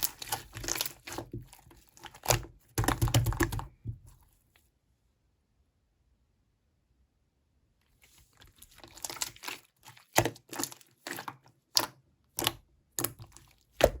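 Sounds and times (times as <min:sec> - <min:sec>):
slime squishing and crackling: 0:00.0 - 0:03.8, 0:08.2 - 0:14.0.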